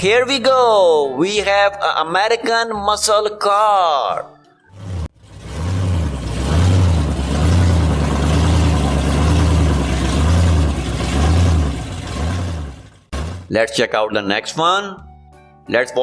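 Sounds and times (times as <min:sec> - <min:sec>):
car engine revving: 0:04.7 - 0:13.5.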